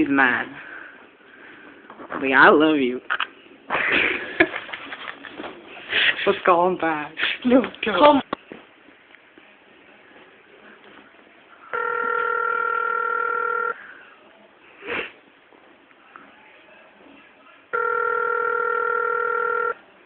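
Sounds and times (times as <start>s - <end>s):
telephone ringback tone: 11.7s - 13.8s, 17.7s - 19.8s.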